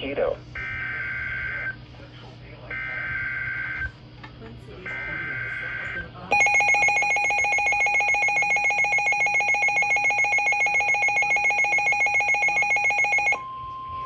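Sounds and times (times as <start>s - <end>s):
pulsing electronic alarm tone: 4.9s - 14.0s.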